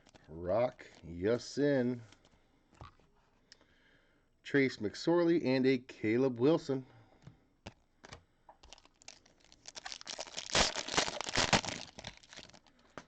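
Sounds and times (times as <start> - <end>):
wrapper tearing and crinkling: 8.6 - 13.0.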